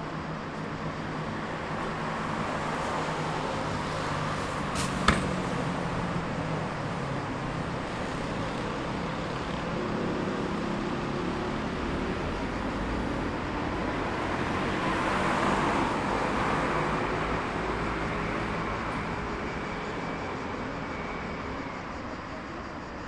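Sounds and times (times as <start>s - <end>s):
sharp knock: 4.8s - 5.5s.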